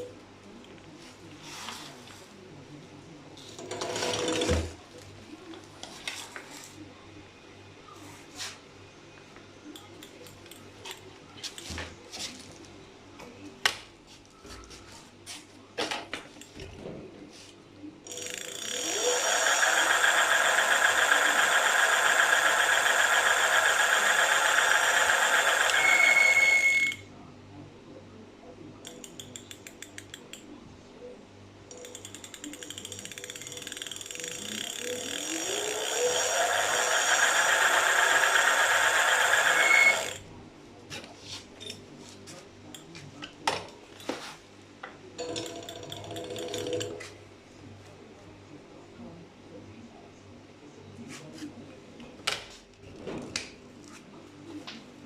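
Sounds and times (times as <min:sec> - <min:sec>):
electric bike motor grinding buzz: 0:18.1 - 0:27.0, 0:34.3 - 0:40.2.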